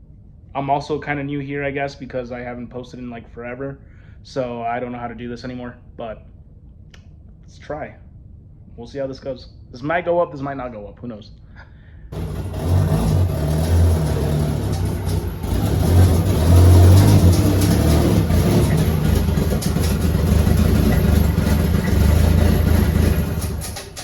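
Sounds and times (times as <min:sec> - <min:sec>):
car engine running: 0:12.2 - 0:24.0
turbo blades smacking housing: 0:12.2 - 0:24.0.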